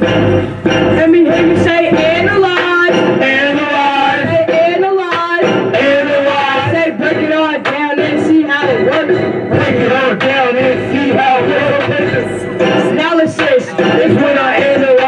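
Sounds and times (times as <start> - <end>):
backing music: 0.0 - 15.0
person singing: 0.4 - 15.0.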